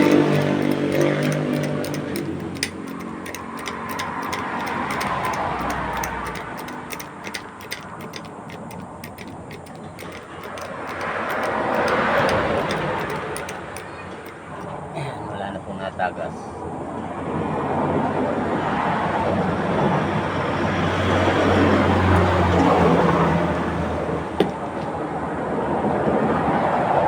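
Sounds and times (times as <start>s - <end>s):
rapid faint ticking: 0.0s - 14.8s, 21.3s - 23.0s
vehicles passing on road: 15.7s - 27.0s.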